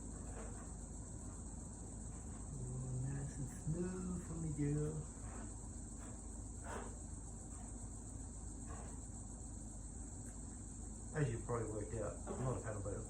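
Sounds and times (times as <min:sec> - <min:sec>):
high-pitched insect chorus: 0:00.0 - 0:13.0
faint short scrapes: 0:05.1 - 0:07.8.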